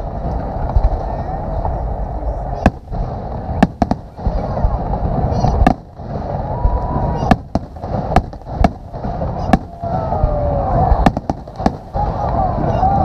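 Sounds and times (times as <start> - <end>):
crowd chattering: 0.0 - 13.0
fireworks bangs: 0.0 - 13.0
low rumble: 0.0 - 13.0
falling firework whistle: 6.2 - 7.6, 9.2 - 13.0.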